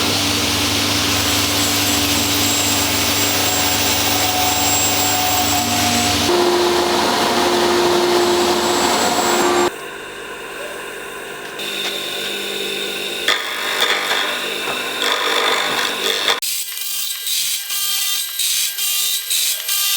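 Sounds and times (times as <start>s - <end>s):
power tool whining: 0.0s - 9.7s
thin high whine: 0.0s - 9.7s.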